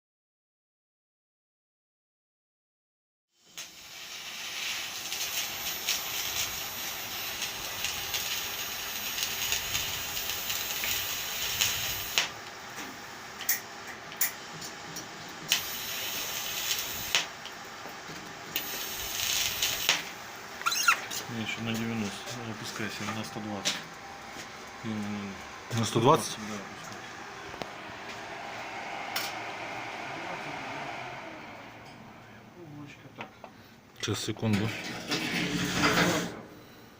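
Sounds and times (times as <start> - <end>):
welding arc hissing: 3.4 - 14.4, 15.4 - 17.5, 18.5 - 23.6
welding arc crackles: 3.4 - 28.2.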